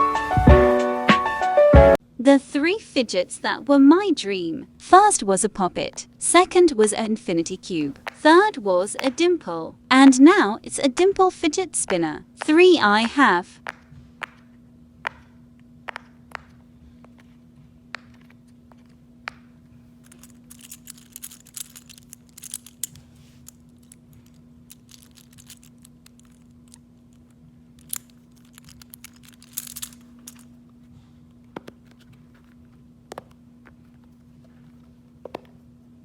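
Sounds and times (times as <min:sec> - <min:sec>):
steady low hum: 0:02.0 - 0:36.0
plastic fidget toys clicking: 0:20.1 - 0:26.8, 0:27.8 - 0:30.4.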